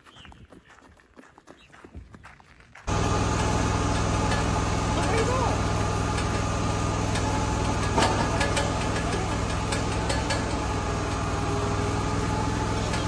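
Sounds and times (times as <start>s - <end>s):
vehicle engine idling: 2.9s - 13.0s.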